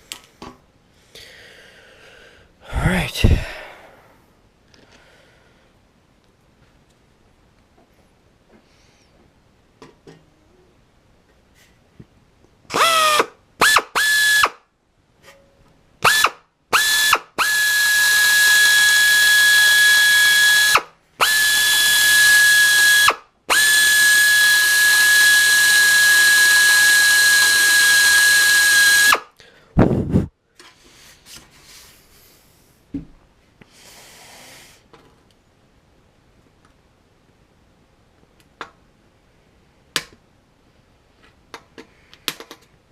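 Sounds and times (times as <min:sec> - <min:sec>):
power drill drilling out rivets: 0:12.7 - 0:14.5, 0:16.0 - 0:29.3.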